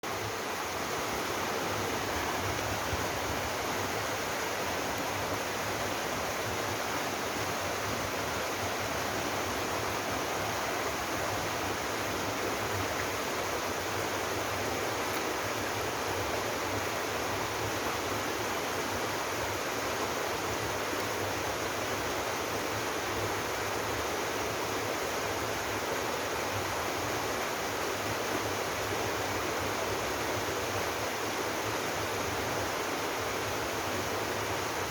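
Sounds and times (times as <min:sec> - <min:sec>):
waterfall and stream rushing: 0:00.0 - 0:34.9.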